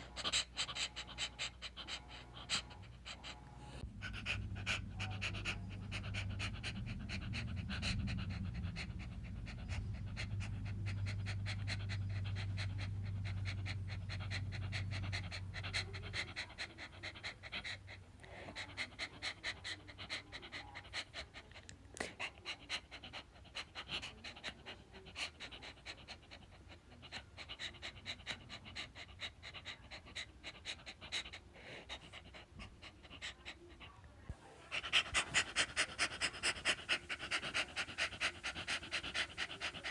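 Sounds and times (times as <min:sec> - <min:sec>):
low steady hum: 0:00.0 - 0:16.1
dog panting: 0:00.0 - 0:39.9.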